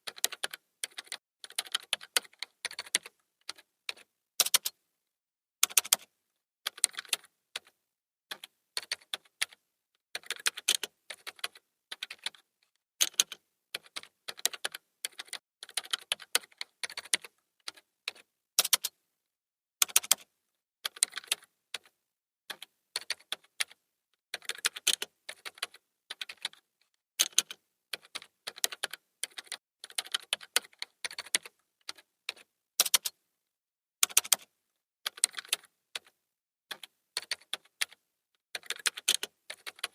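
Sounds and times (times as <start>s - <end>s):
computer keyboard typing: 0.0s - 4.8s, 5.6s - 6.1s, 6.7s - 9.6s, 10.2s - 19.0s, 19.8s - 20.3s, 20.9s - 23.8s, 24.4s - 26.6s, 27.2s - 33.2s, 34.0s - 34.5s, 35.1s - 38.0s, 38.6s - 39.9s.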